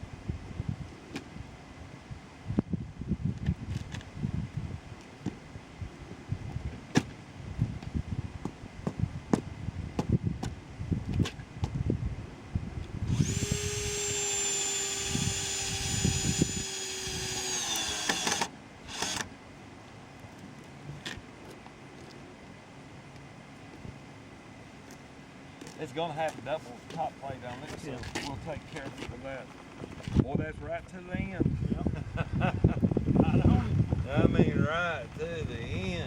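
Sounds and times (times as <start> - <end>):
power drill drilling into concrete: 13.1 - 19.3.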